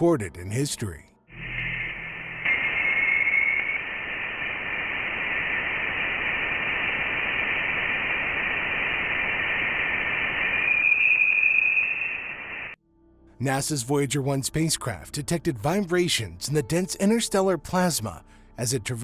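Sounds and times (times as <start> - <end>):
eerie steady hiss: 1.3 - 12.8.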